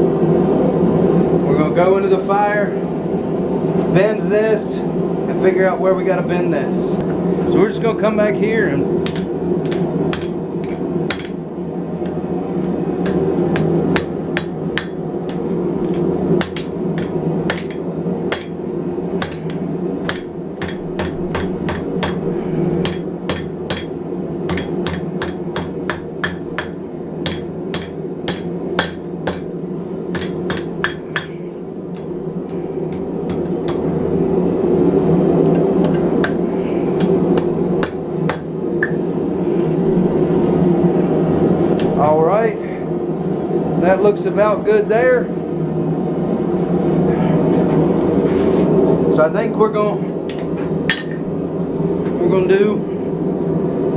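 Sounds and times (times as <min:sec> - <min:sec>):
forge running: 0:08.7 - 0:42.2
hammer striking steel on anvil: 0:09.0 - 0:11.4, 0:13.0 - 0:34.0, 0:35.5 - 0:39.0, 0:50.9 - 0:51.7.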